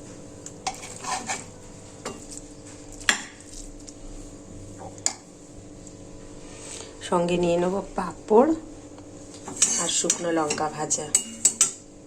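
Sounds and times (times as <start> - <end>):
spoon clinking and scraping pot: 0.6 - 2.4, 9.4 - 11.8.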